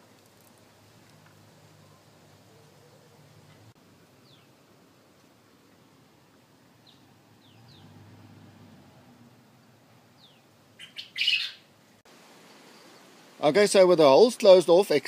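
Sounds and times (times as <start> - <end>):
faint bird chirps: 10.2 - 11.7.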